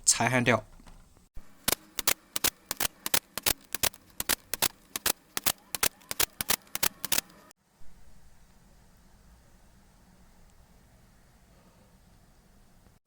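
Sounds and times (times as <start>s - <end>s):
sharp clicks of desoldering: 1.4s - 7.5s.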